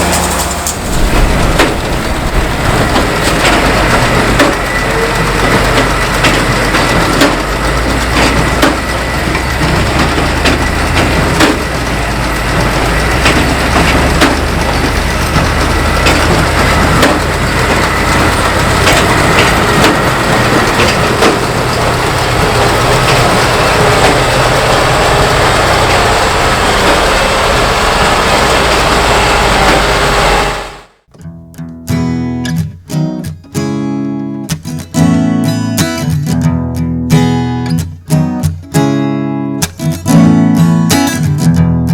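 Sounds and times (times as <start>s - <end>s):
baler knocking and cracking: 0.0s - 30.1s
tractor engine drone: 0.0s - 31.1s.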